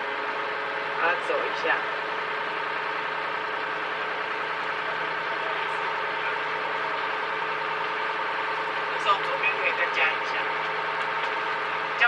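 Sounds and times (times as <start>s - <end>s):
boat engine running: 0.0s - 12.0s.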